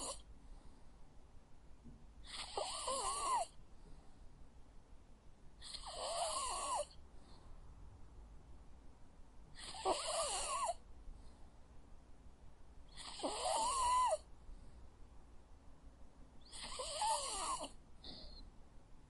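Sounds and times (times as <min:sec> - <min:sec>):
dog snoring with nasal whistle: 0:00.0 - 0:00.2, 0:02.2 - 0:03.6, 0:05.6 - 0:07.0, 0:09.6 - 0:10.8, 0:12.9 - 0:14.3, 0:16.4 - 0:18.5.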